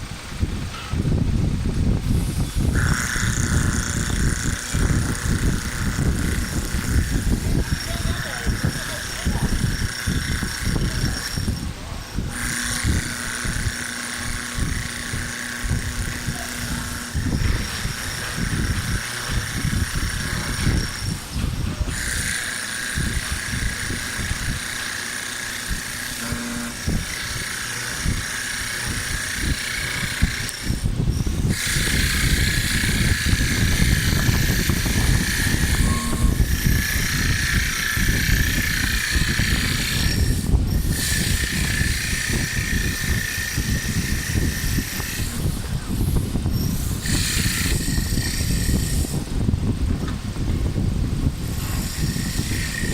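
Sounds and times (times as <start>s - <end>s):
lathe motor whine: 0.0s - 52.9s.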